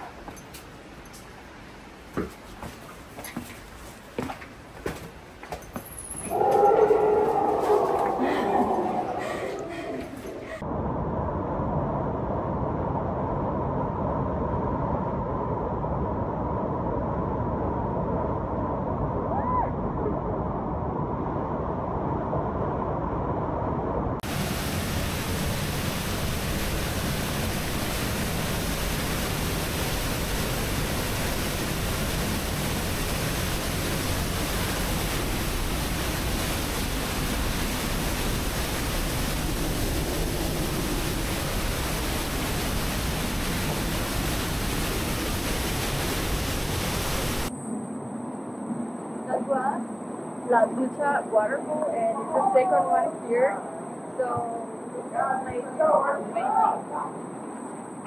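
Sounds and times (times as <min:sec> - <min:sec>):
waterfall rushing: 0:24.2 - 0:47.5.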